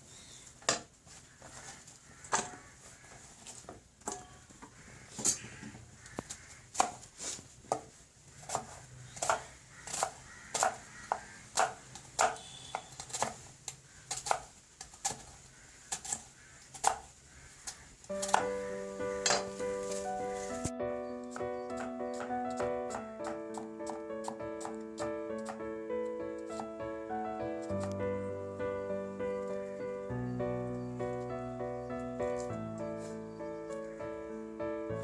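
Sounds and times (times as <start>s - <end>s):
knife chopping on cutting board: 21.7s - 25.6s.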